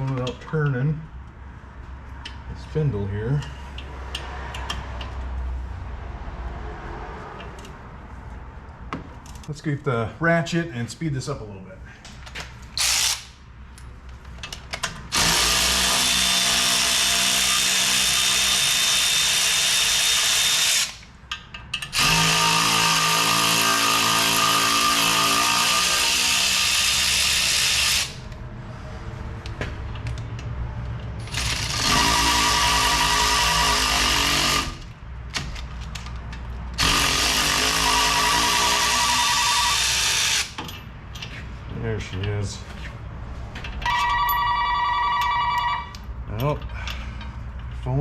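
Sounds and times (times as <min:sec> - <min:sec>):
power ratchet spinning bolts: 0:12.8 - 0:13.3, 0:15.1 - 0:28.2, 0:31.2 - 0:34.9, 0:36.7 - 0:40.8.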